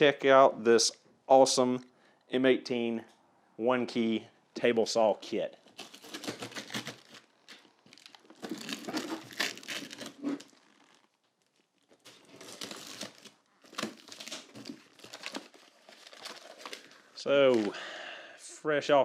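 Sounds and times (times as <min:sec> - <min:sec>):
cardboard and paper crinkling: 0:05.6 - 0:17.7.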